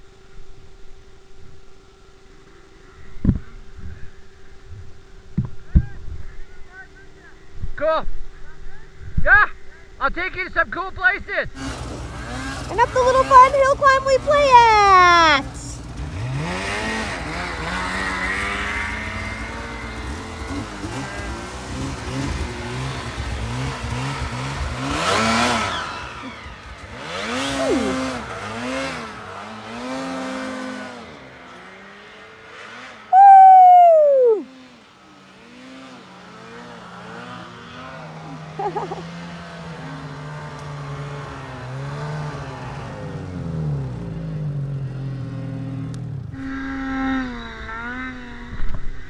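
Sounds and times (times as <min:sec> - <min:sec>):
snowmobile engines revving: 0:11.6 - 0:48.6.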